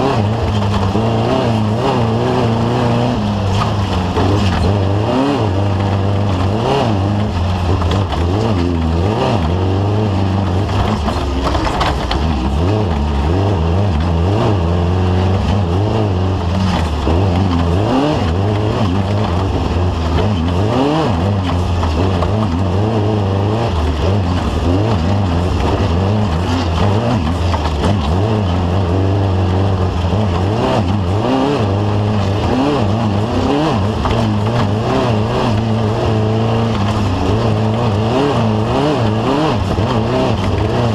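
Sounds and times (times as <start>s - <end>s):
race vehicle engine revving: 0.0s - 40.9s.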